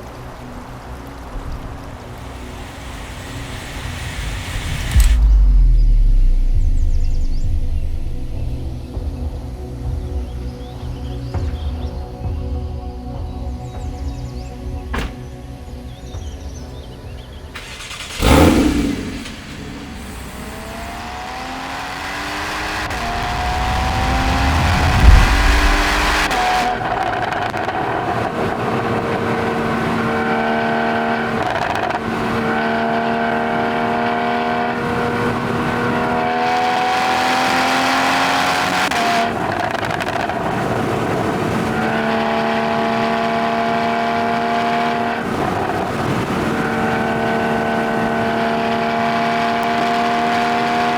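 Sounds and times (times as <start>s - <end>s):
car engine revving: 1.4s - 9.3s, 16.8s - 50.9s
falling whoosh: 2.2s - 8.9s, 17.8s - 21.6s, 22.6s - 27.9s.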